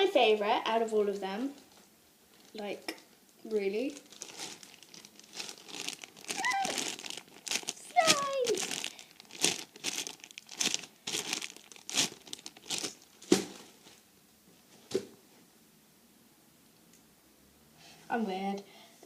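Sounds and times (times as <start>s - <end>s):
squishy toy rustling: 3.9s - 14.0s.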